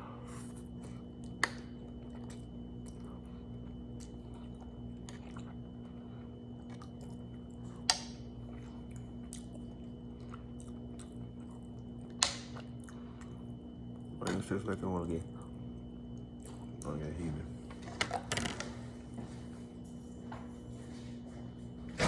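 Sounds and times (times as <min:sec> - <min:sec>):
low steady hum: 0:00.0 - 0:22.0
chewing and mouth sounds: 0:00.2 - 0:14.2, 0:15.3 - 0:17.0.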